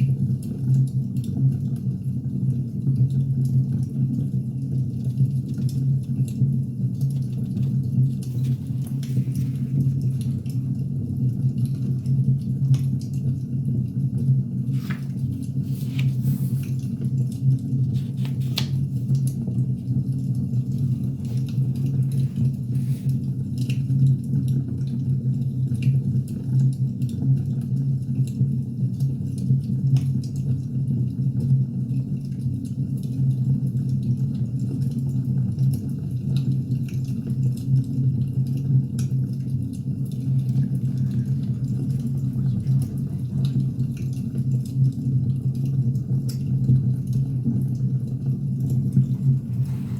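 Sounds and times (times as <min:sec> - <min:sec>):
wood fire crackling: 0:38.8 - 0:49.9.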